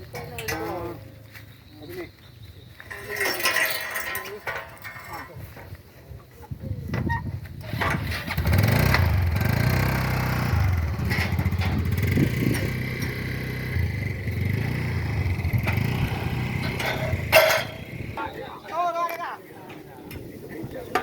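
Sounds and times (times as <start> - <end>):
small engine running: 8.3 - 18.2.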